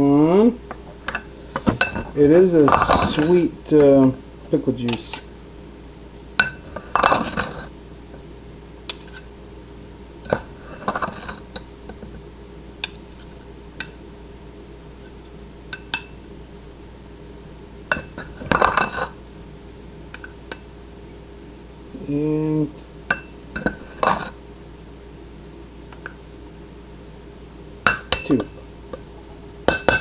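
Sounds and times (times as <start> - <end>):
utensils and dishes clinking: 1.1 - 3.3, 29.7 - 30.0.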